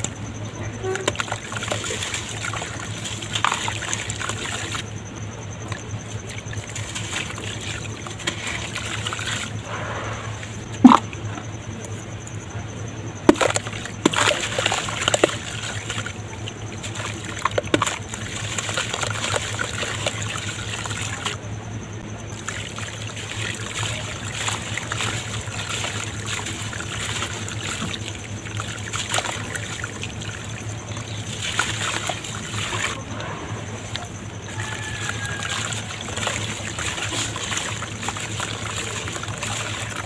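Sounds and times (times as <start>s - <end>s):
sharp plops: 10.7s - 11.3s
dirt fizzing in water: 22.3s - 33.0s, 34.4s - 40.0s.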